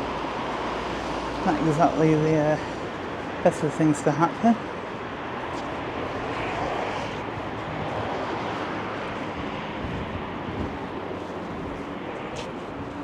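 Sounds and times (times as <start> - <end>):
wind on microphone: 4.7 - 13.0.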